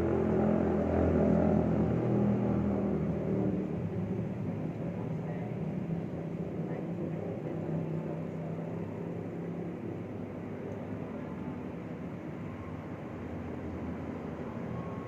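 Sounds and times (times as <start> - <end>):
passing vehicle engine hum: 0.0 - 15.0
road traffic rumble: 0.0 - 15.0.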